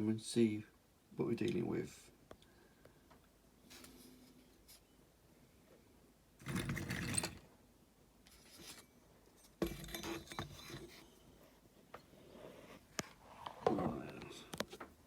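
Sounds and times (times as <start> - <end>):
metal scraping and grinding: 6.4 - 7.5, 9.6 - 11.0.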